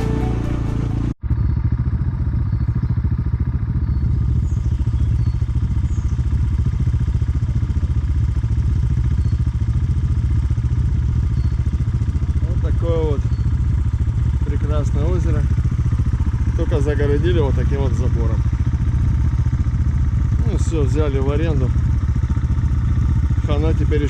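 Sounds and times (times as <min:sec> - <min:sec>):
music: 0:00.0 - 0:01.2
dirt bike engine running: 0:00.0 - 0:24.0.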